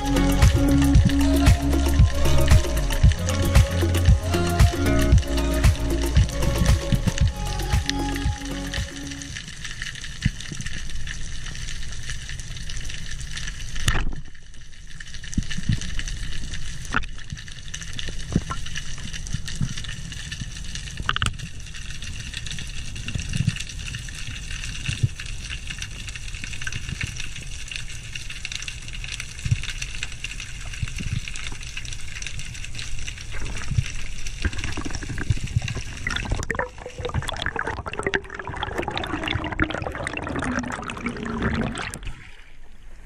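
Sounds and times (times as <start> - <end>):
high hiss: 0.0 - 9.3
underwater rumble of moving water: 15.0 - 43.0.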